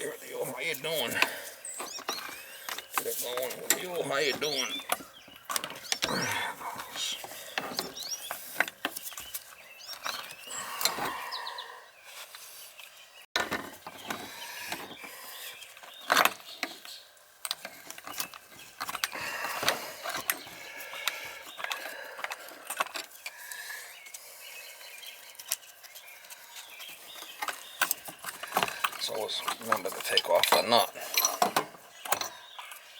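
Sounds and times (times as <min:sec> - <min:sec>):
hand tools clicking on metal: 0:02.1 - 0:06.2, 0:27.3 - 0:32.8.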